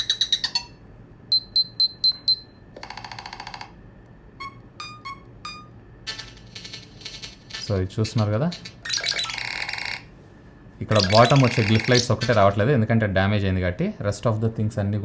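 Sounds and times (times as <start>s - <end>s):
phone electronic beeps: 1.3s - 3.6s, 4.4s - 6.4s, 10.9s - 12.4s.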